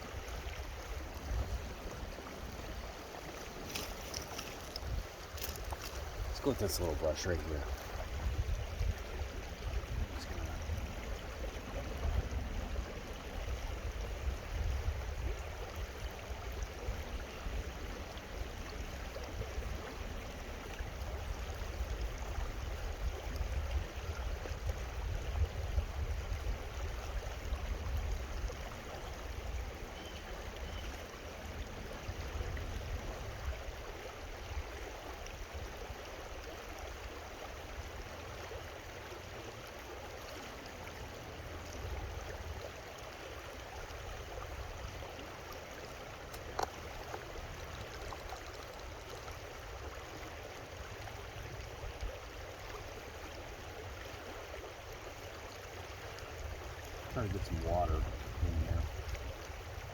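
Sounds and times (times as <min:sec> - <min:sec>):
creek water running: 0:00.0 - 0:59.9.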